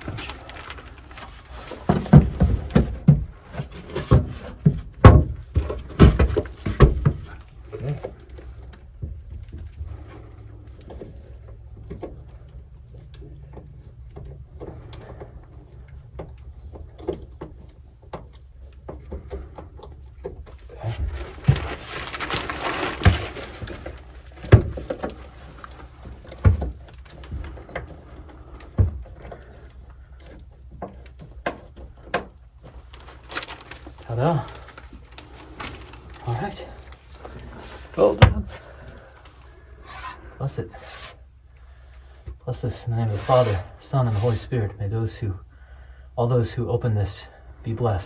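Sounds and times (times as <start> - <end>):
low steady hum: 0.0 - 48.0
knocks and clunks of vault: 1.5 - 8.1
rough scraping: 20.7 - 26.2, 39.3 - 41.3, 42.7 - 44.6.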